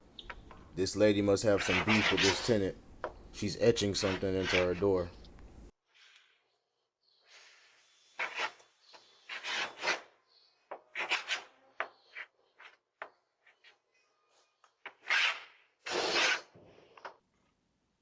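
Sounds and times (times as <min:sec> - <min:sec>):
sharp object scratching a door: 0:00.2 - 0:05.6, 0:07.3 - 0:13.9, 0:14.6 - 0:17.2.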